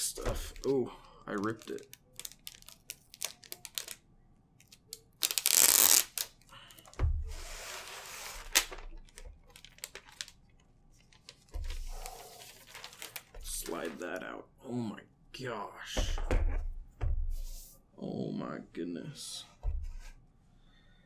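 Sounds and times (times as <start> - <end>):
plastic film crinkling: 0.0 - 4.0, 4.6 - 7.0, 7.6 - 14.0
plastic film ripping: 0.0 - 4.0, 4.6 - 6.9, 7.8 - 10.4, 12.1 - 14.0
plastic rustling: 0.0 - 4.0, 4.6 - 14.2.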